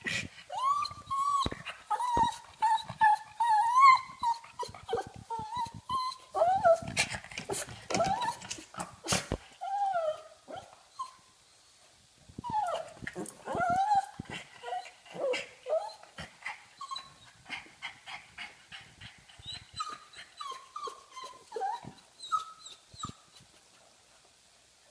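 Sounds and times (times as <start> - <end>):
dog whining and whimpering: 0.5 - 8.7, 9.6 - 11.2, 12.4 - 17.4, 19.4 - 23.4.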